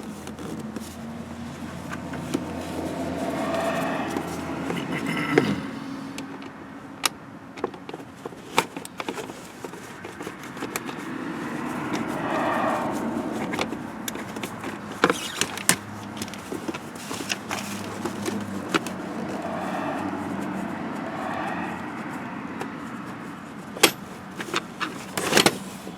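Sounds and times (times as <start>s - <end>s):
rustling: 8.0s - 21.4s.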